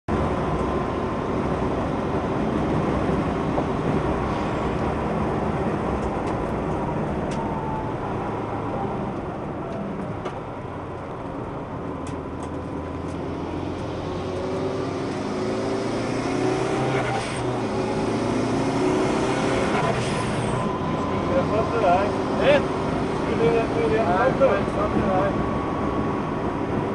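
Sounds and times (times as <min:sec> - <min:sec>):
road and tyre noise: 0:00.0 - 0:26.9
race car engine running hard: 0:12.0 - 0:26.9.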